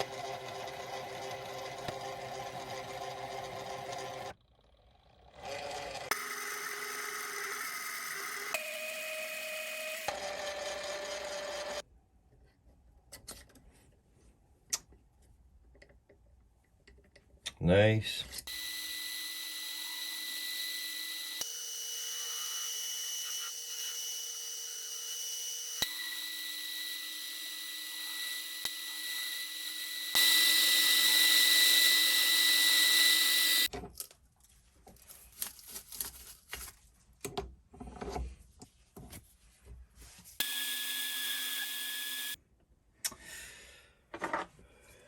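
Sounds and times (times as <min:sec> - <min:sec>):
lathe motor whine: 0:00.0 - 0:04.4, 0:05.0 - 0:11.8, 0:18.5 - 0:33.7, 0:40.4 - 0:42.4.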